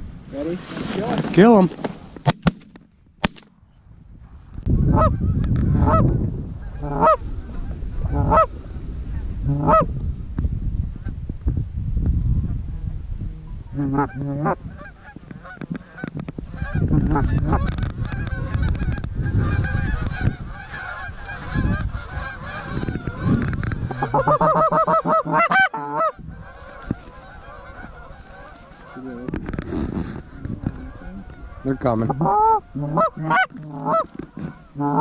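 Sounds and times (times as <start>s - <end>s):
geese honking and clucking: 4.8s - 9.9s, 13.4s - 35.0s.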